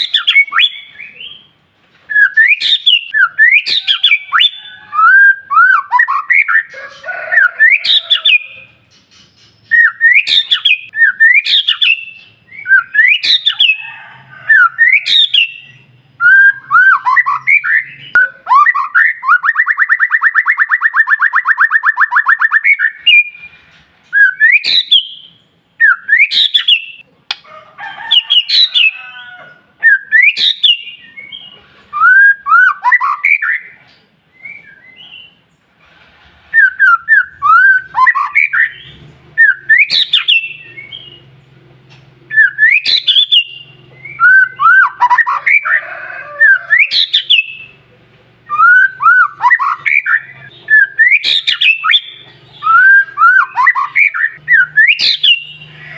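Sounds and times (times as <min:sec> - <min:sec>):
bird singing fluty whistles: 0:00.0 - 0:01.4, 0:02.1 - 0:06.7, 0:09.2 - 0:13.8, 0:14.5 - 0:23.5, 0:24.1 - 0:27.0, 0:29.8 - 0:33.8, 0:36.5 - 0:38.8, 0:39.4 - 0:41.2, 0:42.3 - 0:45.8, 0:46.4 - 0:47.7, 0:48.5 - 0:55.7.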